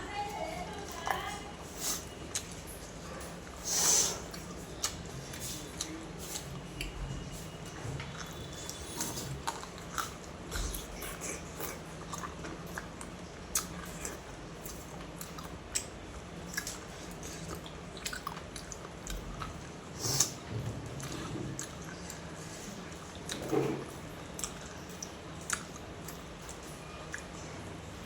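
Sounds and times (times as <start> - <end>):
person chewing and biting food: 8.1 - 20.4, 24.4 - 27.3.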